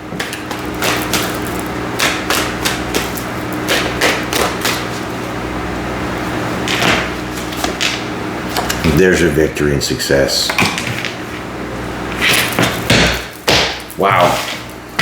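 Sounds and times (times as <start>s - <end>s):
steady low hum: 0.0s - 15.0s
cards tapping on table: 0.2s - 4.9s.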